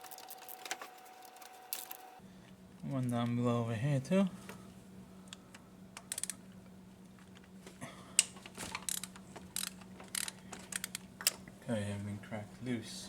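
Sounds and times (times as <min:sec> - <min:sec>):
socket ratchet clicking: 0:06.0 - 0:06.4, 0:08.8 - 0:11.4.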